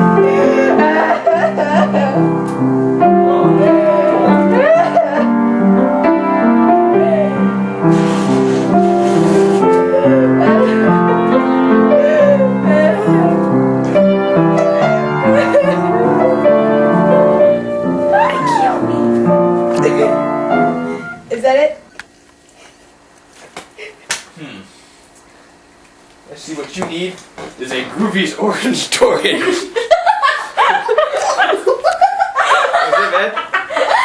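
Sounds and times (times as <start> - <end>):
piano chords: 0.0 - 21.9
brief hiss: 7.8 - 9.8.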